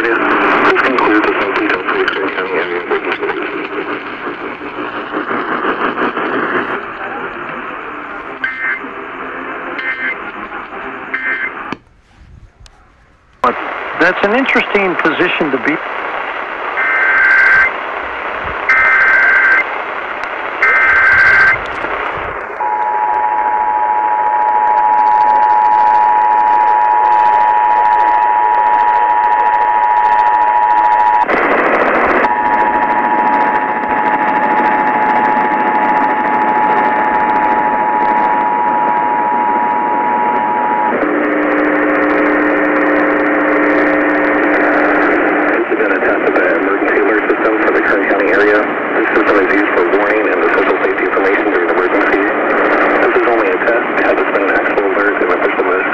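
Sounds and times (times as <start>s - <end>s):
radio static hiss: 0.0s - 55.9s
screeching data tones: 20.6s - 31.3s.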